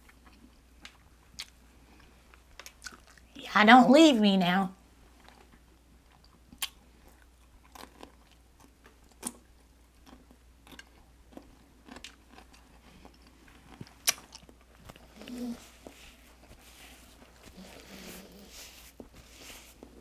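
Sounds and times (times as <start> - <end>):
chewing with wet smacks: 0.0 - 3.3, 5.2 - 15.9.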